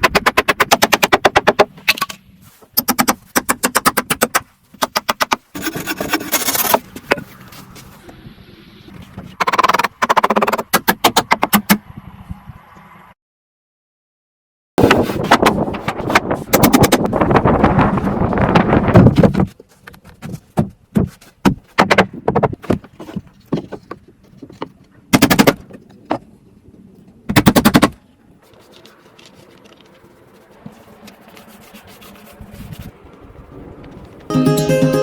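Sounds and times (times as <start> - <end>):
acoustic guitar music: 34.3 - 35.0.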